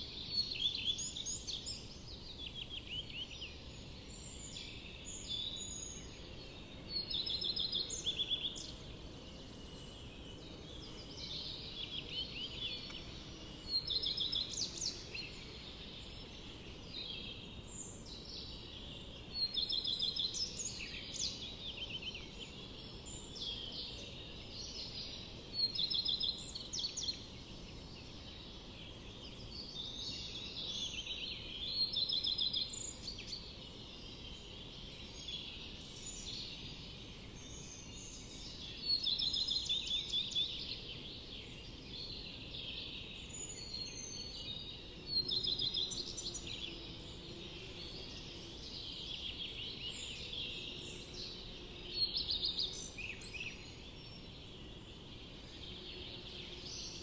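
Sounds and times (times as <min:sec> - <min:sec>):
forest birds singing: 0:00.0 - 0:57.0.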